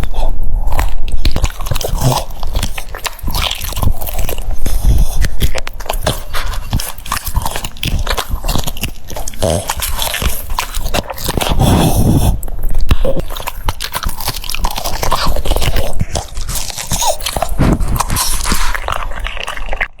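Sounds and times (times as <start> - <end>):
dog chewing crunchy food: 0.0 - 20.0
wet mouth sounds: 0.0 - 20.0.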